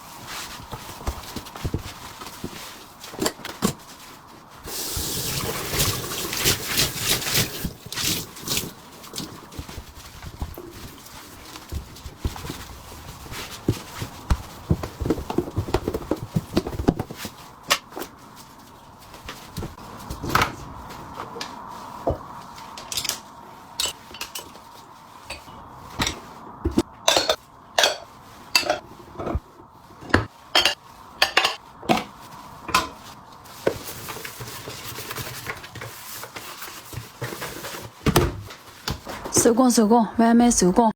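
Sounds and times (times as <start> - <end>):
pots and bowls clattering: 23.8 - 24.6, 27.0 - 29.4, 30.1 - 31.6.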